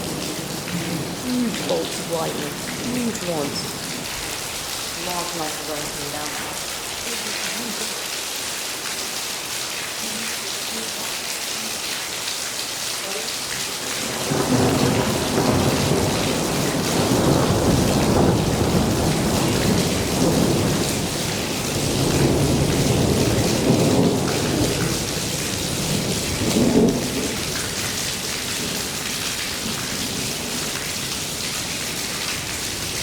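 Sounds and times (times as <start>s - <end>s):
heavy rain pouring: 0.0s - 33.0s
thunder rumbling: 13.8s - 27.6s.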